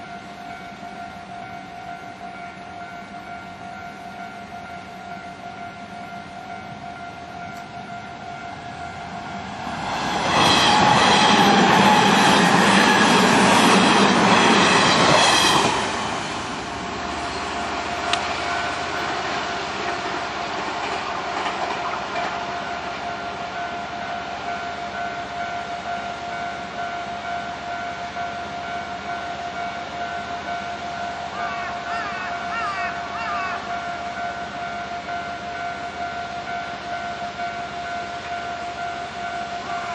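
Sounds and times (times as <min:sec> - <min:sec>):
level crossing warning bell ringing: 0:00.0 - 0:10.0, 0:17.1 - 0:20.6, 0:22.2 - 0:39.9
electric train passing: 0:00.0 - 0:39.9.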